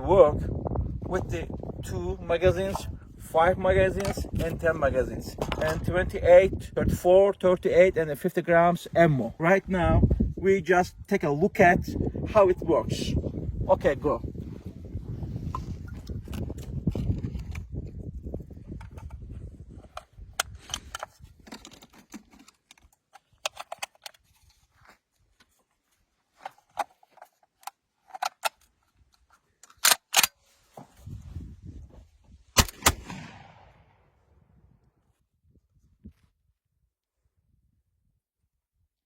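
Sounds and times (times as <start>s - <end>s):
gun metallic clicks: 27.6s - 30.4s, 32.6s - 33.5s
loud shotgun shots: 32.6s - 33.9s.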